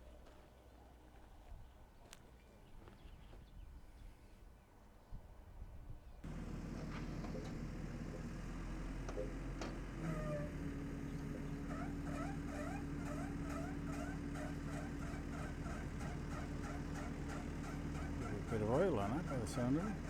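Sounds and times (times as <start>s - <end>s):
machine engine humming: 6.2s - 20.0s
rhythmic mechanical squeak: 6.3s - 20.0s.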